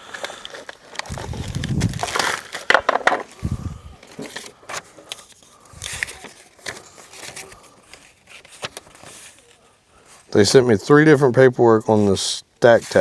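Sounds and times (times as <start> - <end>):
packaging rustling: 0.0 - 9.7, 12.6 - 13.0
plastic trays clicking and knocking: 2.0 - 3.4.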